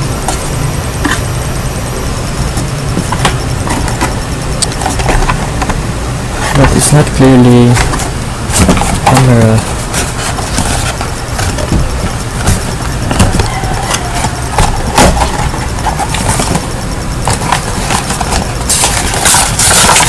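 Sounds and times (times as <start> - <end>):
clicks and knocks of handling: 2.4 - 5.8, 6.4 - 20.0
packaging rustling: 6.4 - 20.0.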